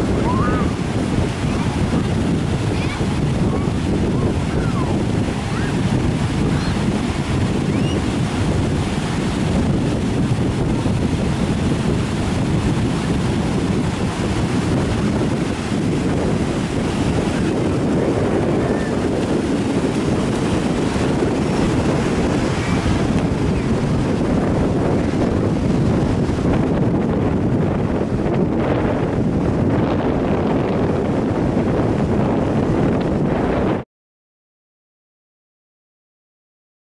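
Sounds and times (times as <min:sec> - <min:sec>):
sea waves breaking on beach: 0:00.0 - 0:33.8
wind buffeting microphone: 0:00.0 - 0:33.8.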